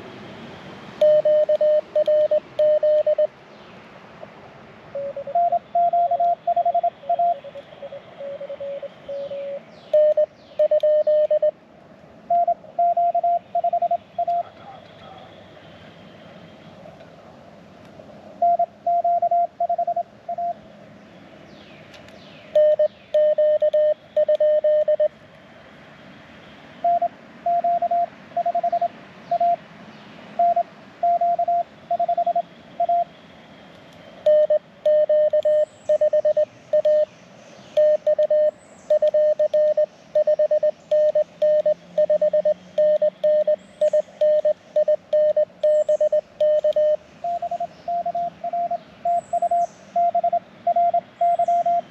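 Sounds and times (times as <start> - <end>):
morse code tone: 1.0 - 3.3, 5.0 - 7.5, 8.2 - 11.5, 12.3 - 14.6, 18.4 - 20.6, 22.6 - 25.1, 26.8 - 29.6, 30.4 - 33.1, 34.3 - 37.1, 37.8 - 51.9.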